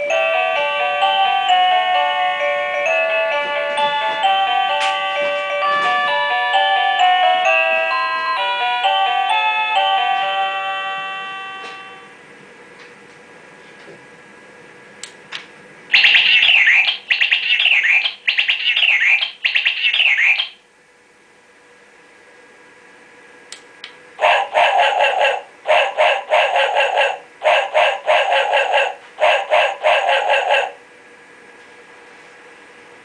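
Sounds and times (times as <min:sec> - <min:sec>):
chirping alert tone: 0:15.9 - 0:20.6
rapid pulsing alert tone: 0:15.9 - 0:20.6.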